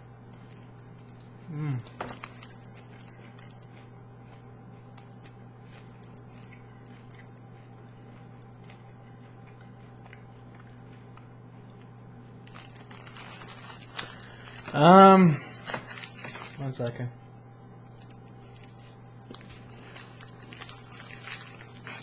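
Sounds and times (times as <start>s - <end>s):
steady low hum: 0.0s - 22.0s
crunching and chewing candy: 0.3s - 16.8s, 17.8s - 22.0s.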